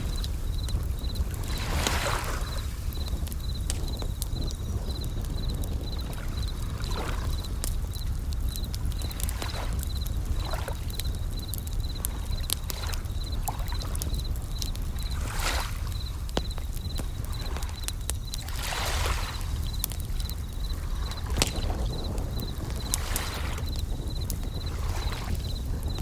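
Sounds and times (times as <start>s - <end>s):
waves washing in: 0.0s - 3.0s, 18.4s - 19.6s, 20.3s - 23.8s
campfire crackling and popping: 0.0s - 26.0s
crickets chirping: 0.0s - 26.0s.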